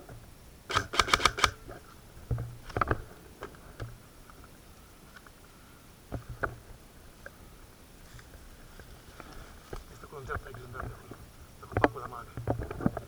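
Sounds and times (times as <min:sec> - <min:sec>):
sharp clicks and knocks: 0:00.7 - 0:02.9.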